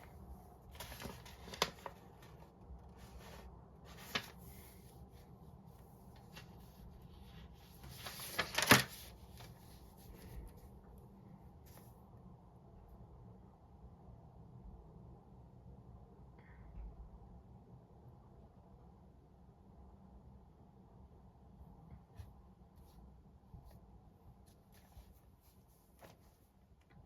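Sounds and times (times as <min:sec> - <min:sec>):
paper rustling: 0:00.0 - 0:10.8, 0:24.4 - 0:27.0
faint low hum: 0:00.0 - 0:27.0.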